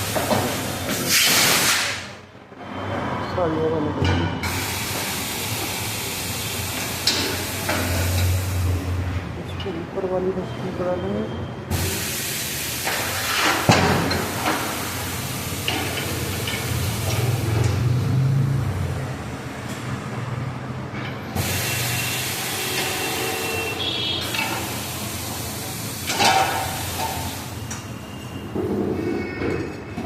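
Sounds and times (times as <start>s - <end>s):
compressed air hissing: 0.0s - 2.2s, 4.4s - 8.9s, 11.7s - 18.5s, 21.4s - 27.7s.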